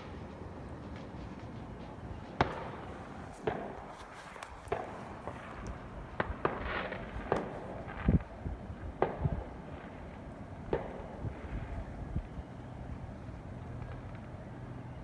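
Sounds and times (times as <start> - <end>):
fireworks bangs and pops: 0.0 - 8.4, 9.0 - 11.4.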